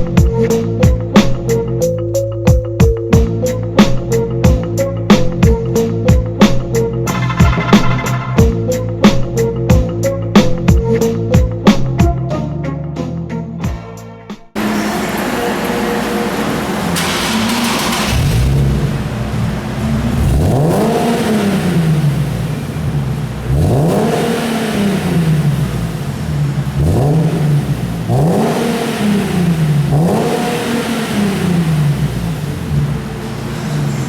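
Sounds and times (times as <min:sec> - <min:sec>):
car engine revving: 0:06.4 - 0:09.6, 0:14.6 - 0:34.0.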